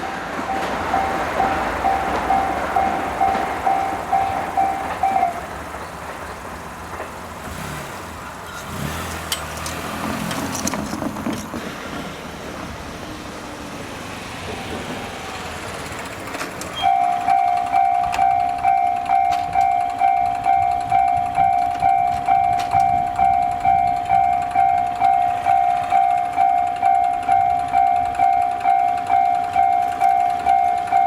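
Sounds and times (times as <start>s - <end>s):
level crossing warning bell: 0.0s - 7.0s, 16.6s - 31.0s
road vehicle passing: 0.0s - 31.0s.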